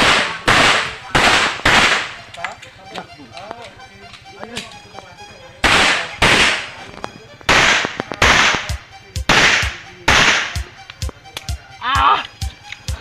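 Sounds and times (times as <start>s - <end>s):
pistol shots with echo: 0.0s - 2.4s, 5.6s - 10.8s.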